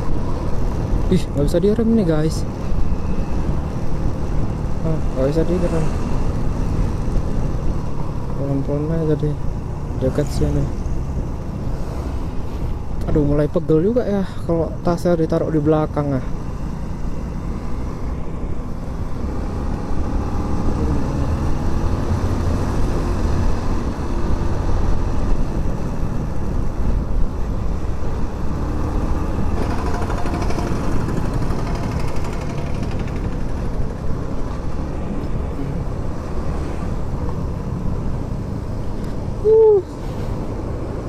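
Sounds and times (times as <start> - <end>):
low wind rumble: 0.0 - 41.0
motorcycle engine running: 29.6 - 35.1.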